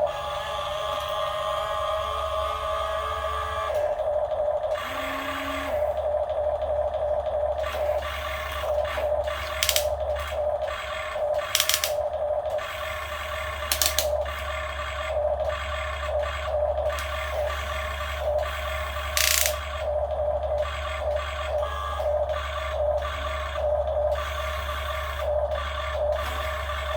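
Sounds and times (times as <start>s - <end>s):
model excavator motors whining: 0.0s - 26.9s.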